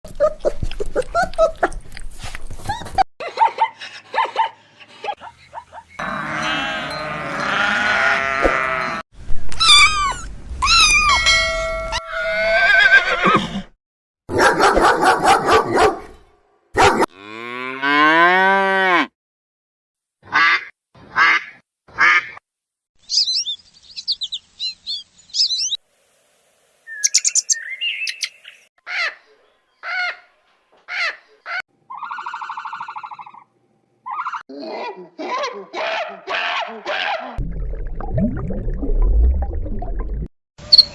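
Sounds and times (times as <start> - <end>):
cattle mooing: 6.0 - 9.0, 17.1 - 19.1
animal calls: 30.9 - 37.4.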